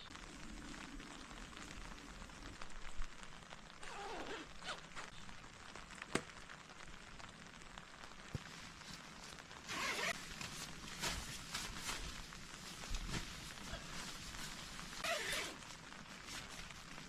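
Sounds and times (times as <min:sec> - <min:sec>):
rustling handling sounds: 0:08.3 - 0:17.0.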